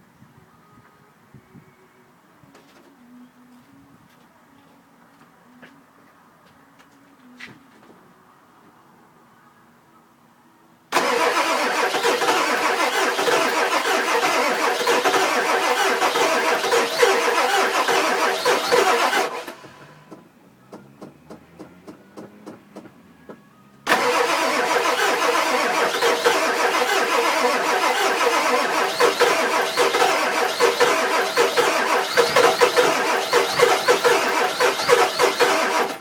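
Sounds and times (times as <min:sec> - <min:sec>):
diesel engine cranking: 0:10.9 - 0:20.2, 0:23.8 - 0:36.0.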